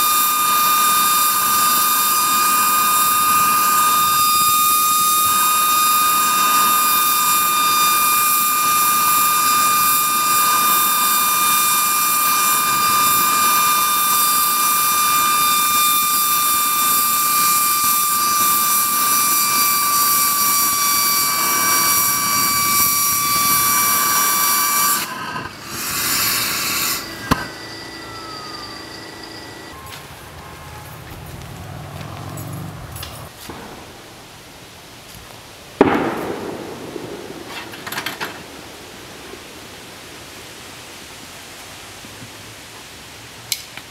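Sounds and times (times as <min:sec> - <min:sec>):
jet noisemaker hissing and whistling: 0:00.0 - 0:31.2.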